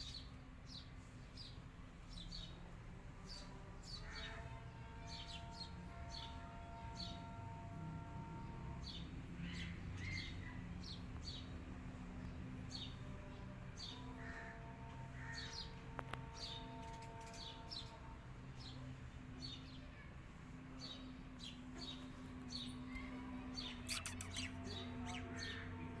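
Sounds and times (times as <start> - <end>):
small birds chirping: 8.9 - 20.1, 20.7 - 26.0.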